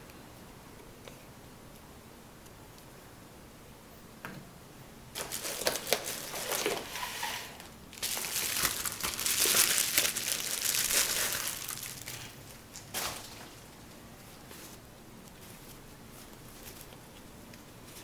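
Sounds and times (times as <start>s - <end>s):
packaging crinkling: 5.2s - 14.0s.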